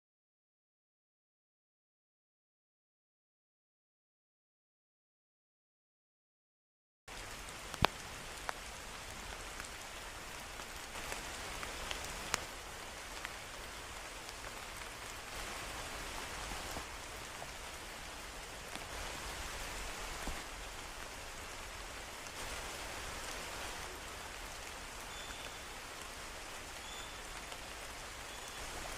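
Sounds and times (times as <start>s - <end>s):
close raindrops striking: 7.1s - 28.9s
steady rain falling: 7.1s - 28.9s.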